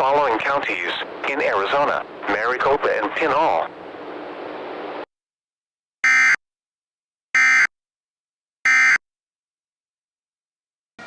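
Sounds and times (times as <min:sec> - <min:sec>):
steady radio hiss: 0:00.0 - 0:05.0.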